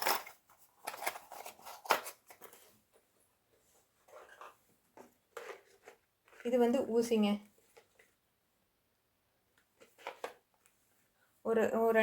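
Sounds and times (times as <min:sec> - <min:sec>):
small items rustling and clicking: 0:00.0 - 0:03.0.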